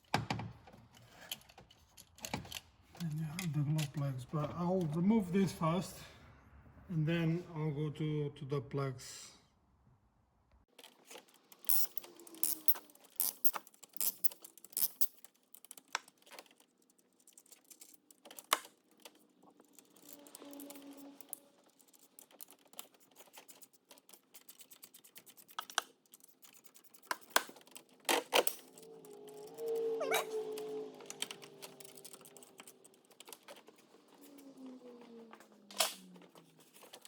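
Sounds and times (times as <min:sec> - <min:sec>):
plastic wiring clips rattling: 0:10.8 - 0:34.6, 0:35.5 - 0:37.0.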